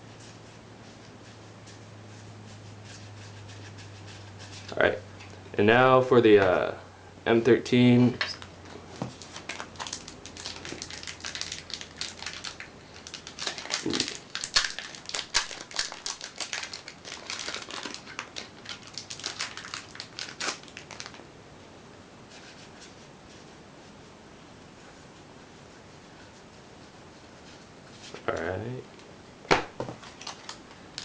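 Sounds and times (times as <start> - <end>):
cards rustling: 8.3 - 21.2, 29.9 - 31.0
foil wrapper crinkling: 8.3 - 21.2, 30.0 - 31.0.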